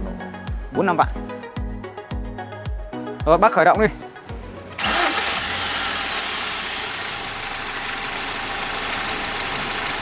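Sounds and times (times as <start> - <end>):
car engine idling: 4.3 - 10.0.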